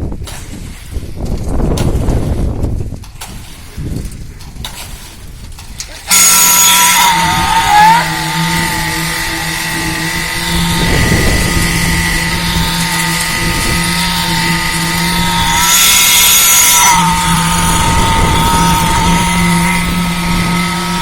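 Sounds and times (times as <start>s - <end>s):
concrete machinery engine drone: 6.0s - 21.0s
warbling squeak: 6.1s - 21.0s.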